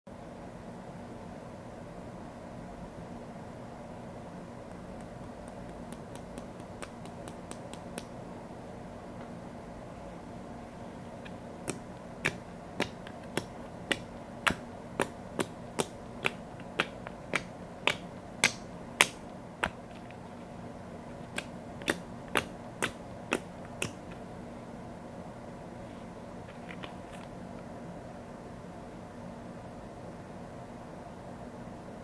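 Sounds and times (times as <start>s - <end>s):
slime wet clicking pops: 21.3s - 24.0s.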